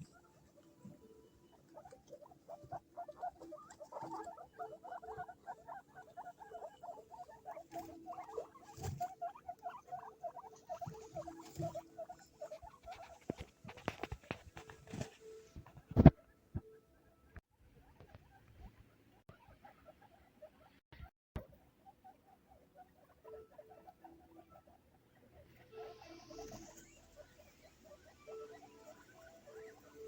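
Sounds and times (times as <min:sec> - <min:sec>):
guinea pigs squeaking: 0:00.0 - 0:30.0.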